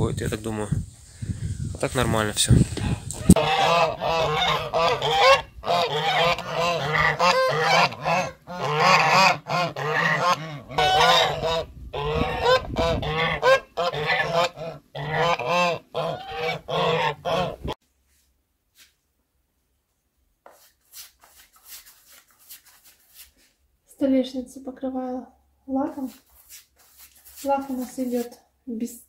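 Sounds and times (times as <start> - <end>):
geese honking: 2.8 - 17.8.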